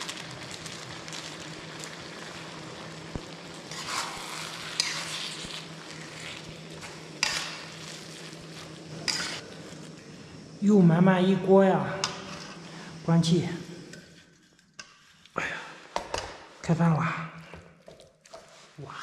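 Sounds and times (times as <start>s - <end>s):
food sizzling in a pot: 0.0s - 16.8s, 17.8s - 19.0s
spoon scraping a pot: 9.0s - 9.4s.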